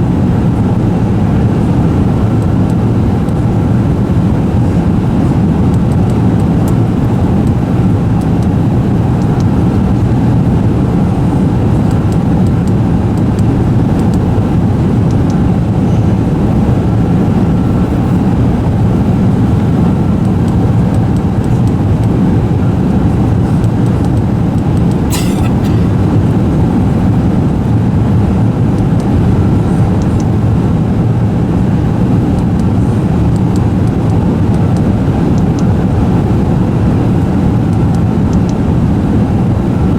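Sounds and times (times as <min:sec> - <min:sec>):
airliner cabin roar: 0:00.0 - 0:39.9
short click: 0:25.1 - 0:26.0.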